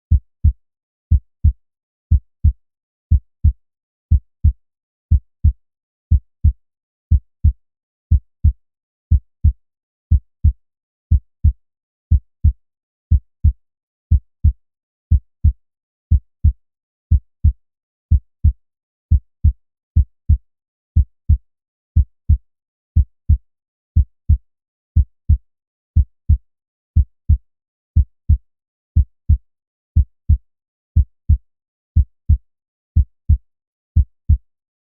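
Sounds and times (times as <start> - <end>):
heartbeat through stethoscope: 0.1 - 20.4, 22.0 - 22.4, 23.0 - 23.4, 24.0 - 24.4, 25.0 - 25.4, 26.0 - 26.4, 27.0 - 27.4, 28.0 - 28.4, 29.0 - 29.4, 30.0 - 30.4, 31.0 - 31.4, 32.0 - 32.4, 33.0 - 33.4, 34.0 - 34.4.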